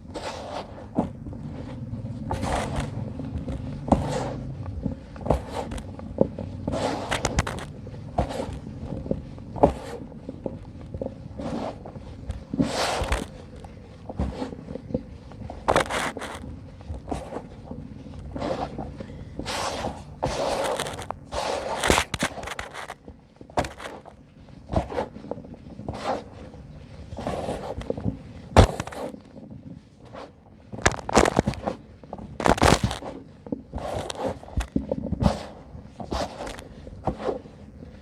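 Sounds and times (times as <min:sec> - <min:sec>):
cement pieces snapping: 0:30.8 - 0:31.6, 0:32.4 - 0:33.0
cement crumbling by hand: 0:30.8 - 0:35.2.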